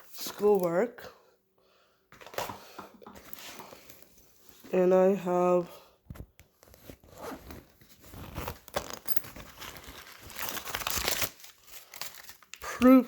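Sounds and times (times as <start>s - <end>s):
rummaging in fabric backpack: 6.5s - 12.3s.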